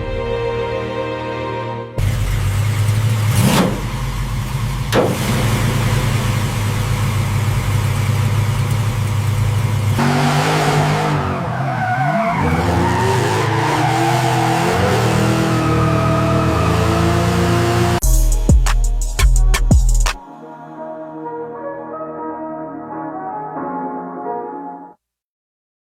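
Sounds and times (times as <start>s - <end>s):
car engine droning: 2.0s - 20.1s.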